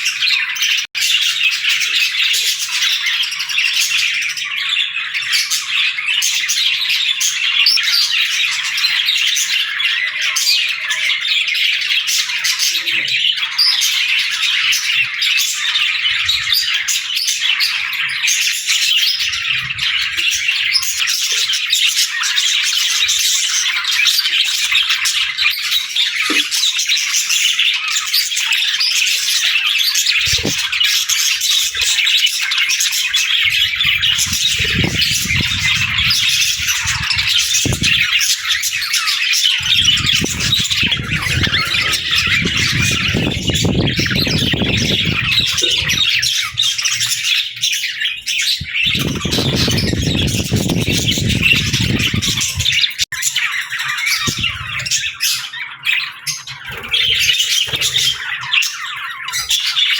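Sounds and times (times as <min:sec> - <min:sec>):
budgerigars chattering and squawking: 0:00.0 - 0:59.9.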